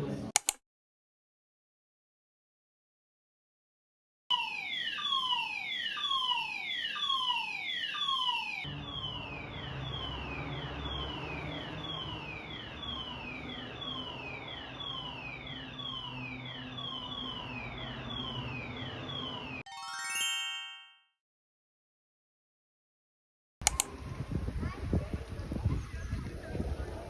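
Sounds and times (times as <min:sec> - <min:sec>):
fire alarm falling tone: 0:04.3 - 0:20.8.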